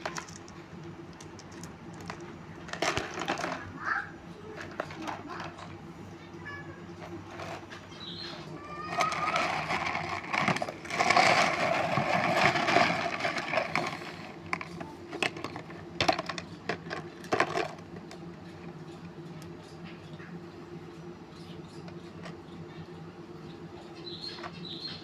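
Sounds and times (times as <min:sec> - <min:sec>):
small stones clattering: 0:08.9 - 0:17.7.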